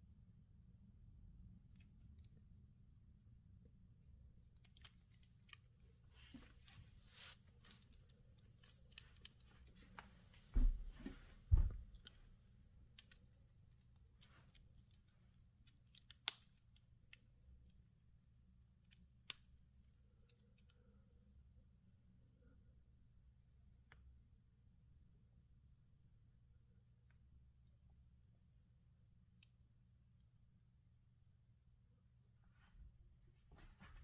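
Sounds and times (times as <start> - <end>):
small handling clicks: 4.5 - 6.8, 12.9 - 18.0, 18.8 - 20.8.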